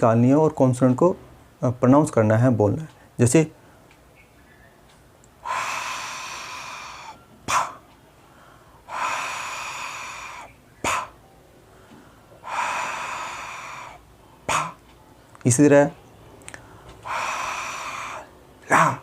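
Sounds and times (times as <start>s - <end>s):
man blowing breath out: 5.4s - 7.9s, 8.6s - 11.2s, 12.4s - 14.8s, 17.0s - 19.0s.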